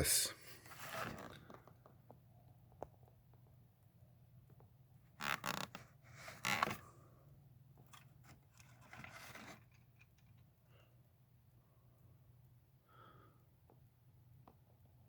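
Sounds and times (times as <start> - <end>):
plastic packaging scraping and rustling: 0.6 - 1.6, 7.9 - 10.4.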